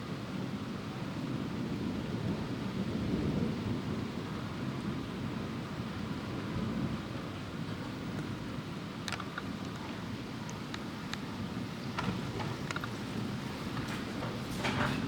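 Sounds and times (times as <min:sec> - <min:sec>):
distant thunder rumbling: 0:09.9 - 0:15.0.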